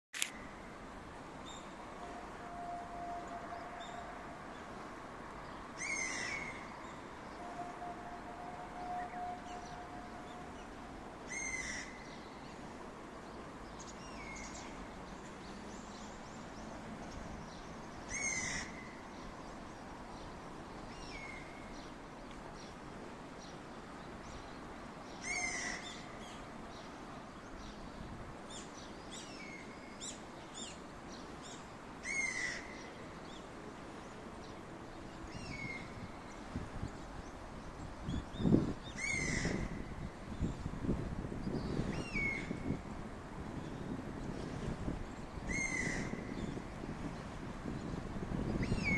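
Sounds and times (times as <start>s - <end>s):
songbird singing: 1.4s - 42.9s.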